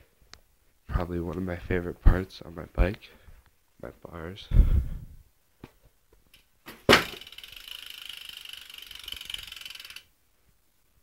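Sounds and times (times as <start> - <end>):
bike hub ratcheting clicks: 7.0 - 10.1.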